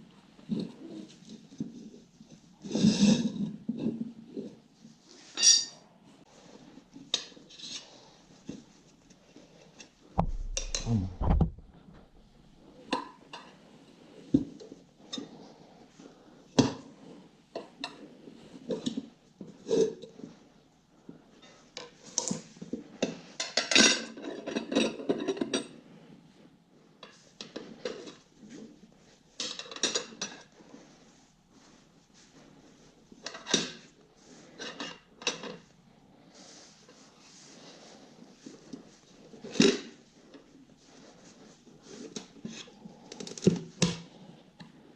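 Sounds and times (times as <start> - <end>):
low thud: 10.2 - 12.4.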